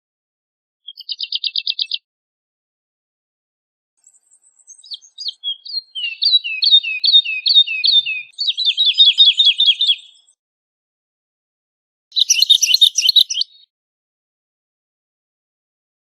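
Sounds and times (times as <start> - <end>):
bird singing fluty notes: 4.0 - 10.4, 12.1 - 13.7.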